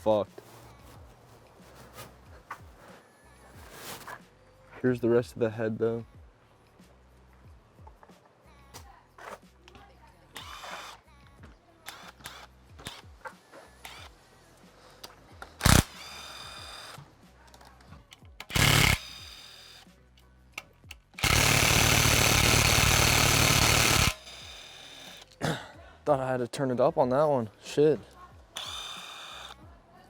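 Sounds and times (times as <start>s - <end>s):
impact wrench bursts: 10.4s - 11.0s, 13.8s - 14.1s, 15.6s - 17.0s, 18.4s - 19.8s, 21.2s - 25.4s, 28.6s - 29.6s.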